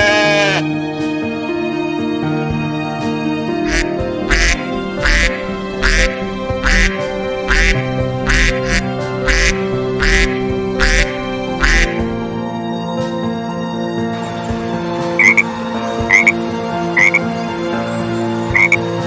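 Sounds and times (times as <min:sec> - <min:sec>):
duck quacking: 0:00.0 - 0:00.6, 0:03.6 - 0:12.1, 0:15.2 - 0:15.5, 0:16.1 - 0:16.4, 0:17.0 - 0:17.2, 0:18.5 - 0:18.8
background music: 0:00.0 - 0:19.0.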